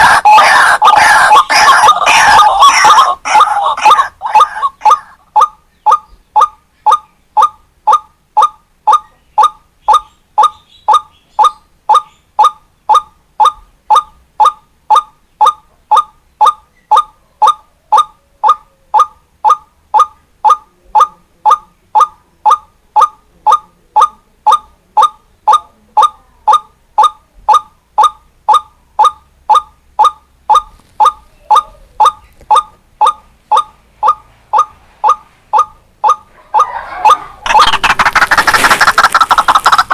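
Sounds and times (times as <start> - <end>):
waterhen calling: 0.0 - 13.1, 36.1 - 39.9.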